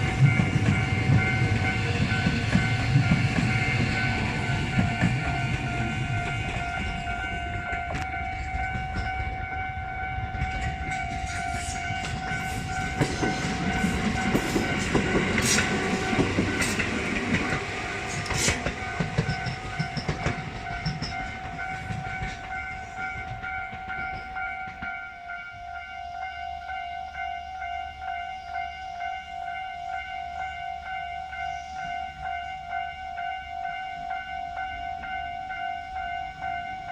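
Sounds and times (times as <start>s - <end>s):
train wheels clattering: 0.0s - 25.5s
level crossing warning bell: 0.0s - 36.9s.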